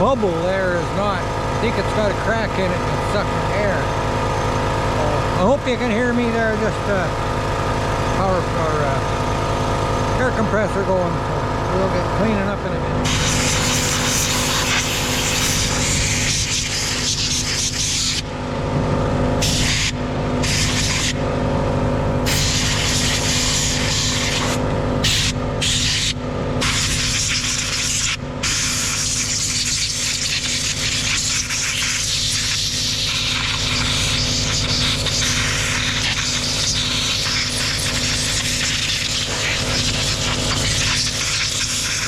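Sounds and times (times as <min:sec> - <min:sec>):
air compressor humming: 0:00.0 - 0:42.0
air blow gun hissing: 0:12.4 - 0:18.5, 0:19.4 - 0:21.3, 0:22.2 - 0:42.0.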